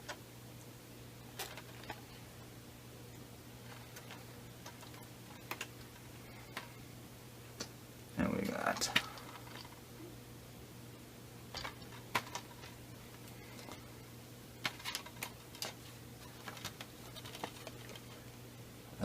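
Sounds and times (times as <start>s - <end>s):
low electrical hum: 0.0s - 19.0s
plastic cases clicking: 11.6s - 12.8s, 14.6s - 18.1s.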